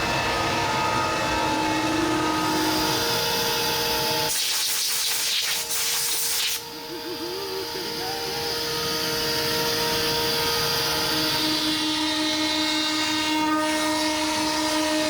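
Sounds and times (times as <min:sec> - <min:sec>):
machine humming: 0:00.0 - 0:15.0
loud air hiss: 0:04.3 - 0:06.7.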